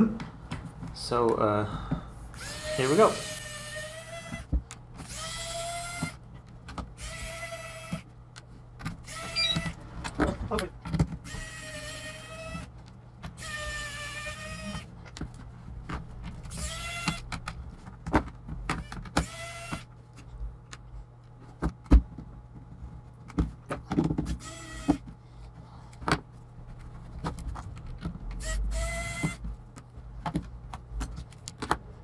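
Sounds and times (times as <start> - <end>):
electric screwdriver whirring: 2.3 - 6.2, 7.0 - 8.1, 9.0 - 9.8, 11.2 - 12.7, 13.4 - 14.9, 16.5 - 17.4, 18.7 - 19.9, 24.3 - 25.0, 28.4 - 29.4
clicks and taps on plastic: 29.8 - 31.8.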